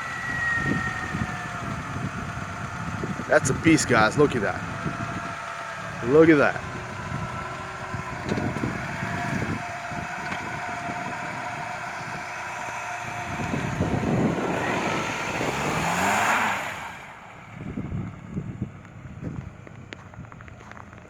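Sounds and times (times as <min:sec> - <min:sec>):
car engine revving: 0:00.0 - 0:21.0.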